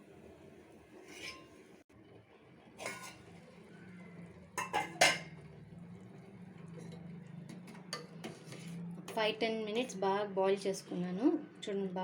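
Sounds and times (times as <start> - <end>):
metal utensil clinking on pot: 2.8 - 3.3, 4.6 - 5.4.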